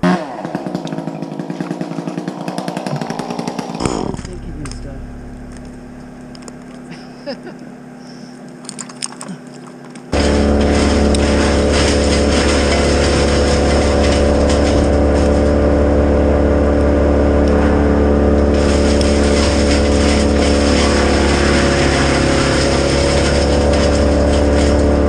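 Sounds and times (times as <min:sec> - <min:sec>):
engine running steadily: 0:00.8 - 0:25.0.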